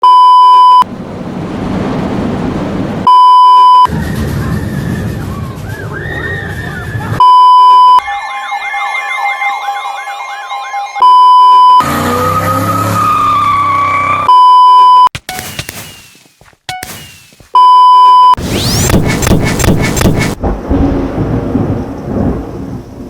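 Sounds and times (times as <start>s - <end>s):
rumbling noise: 0.9s - 3.1s, 18.4s - 23.0s
loud electronic beep: 3.1s - 3.9s, 7.2s - 20.4s
wailing sirens: 3.8s - 14.4s.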